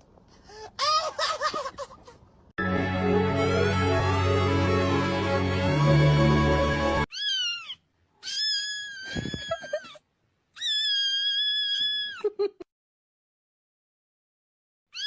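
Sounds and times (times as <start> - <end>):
background music: 2.6 - 7.1
cat meowing: 7.1 - 9.9, 10.6 - 12.2.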